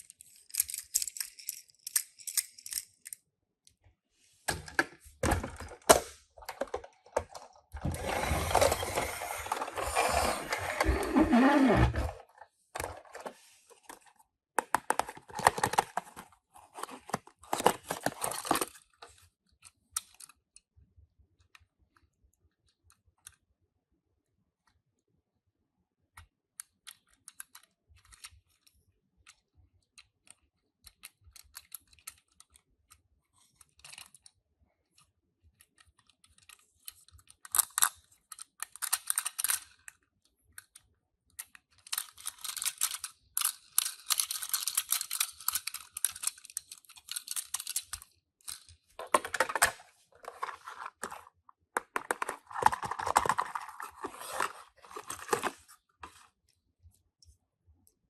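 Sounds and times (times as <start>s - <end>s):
light clicks and taps of toy cars: 0.0s - 3.9s, 18.6s - 23.5s, 26.0s - 48.9s
packaging rustling and crinkling: 14.8s - 19.0s, 49.0s - 56.3s.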